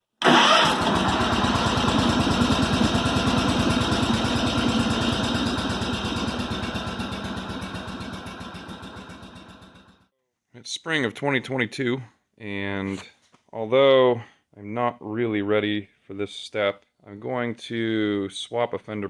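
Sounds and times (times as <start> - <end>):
small engine running: 0.2 - 10.1.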